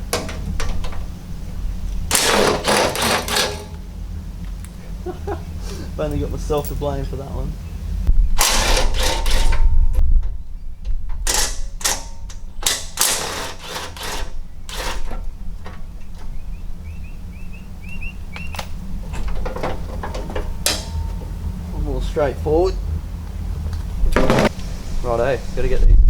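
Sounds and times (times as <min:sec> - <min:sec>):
tools clattering on bolts: 0:02.1 - 0:03.9, 0:06.1 - 0:07.0, 0:08.4 - 0:09.8, 0:11.2 - 0:16.3, 0:24.2 - 0:24.5.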